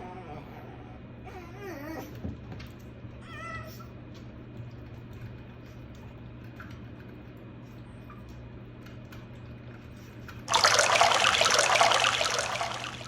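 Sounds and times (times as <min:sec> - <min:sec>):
puppy whining: 0:00.0 - 0:02.2.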